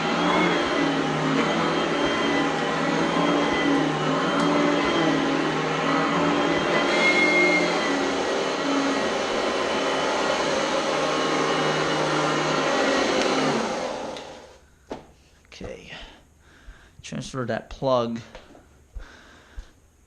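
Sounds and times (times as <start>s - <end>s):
vacuum cleaner running on carpet: 0.0s - 14.6s.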